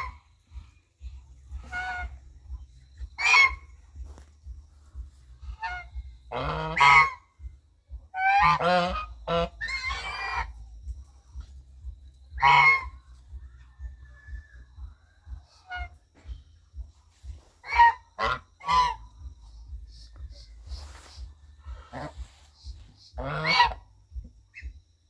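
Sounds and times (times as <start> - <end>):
goose honking: 0.0 - 0.7, 1.4 - 4.2, 5.4 - 7.4, 8.1 - 10.6, 12.4 - 13.2, 15.5 - 16.0, 17.6 - 19.6, 20.4 - 23.9.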